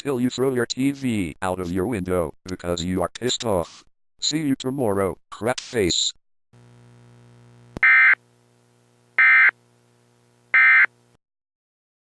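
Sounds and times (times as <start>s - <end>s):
faint steady hum: 6.6s - 11.2s
harsh electronic data bursts: 7.8s - 8.2s, 9.2s - 9.6s.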